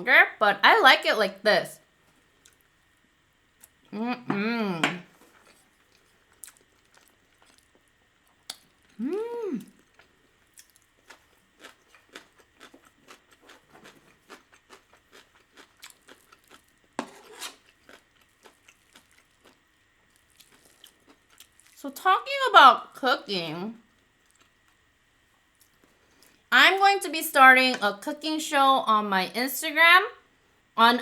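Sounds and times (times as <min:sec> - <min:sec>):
person humming mm: 0:03.9 - 0:04.9, 0:09.0 - 0:09.8
person chewing food: 0:05.1 - 0:21.8, 0:23.9 - 0:26.4.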